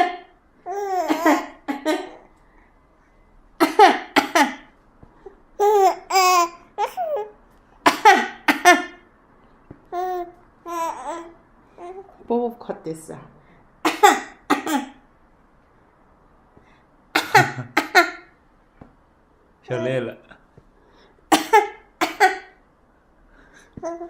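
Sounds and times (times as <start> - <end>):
baby laughing: 0.7 - 2.3, 5.6 - 9.0, 9.9 - 12.0
adult coughing: 3.6 - 4.6, 7.9 - 8.9, 13.9 - 15.0, 17.2 - 18.0, 21.3 - 22.6.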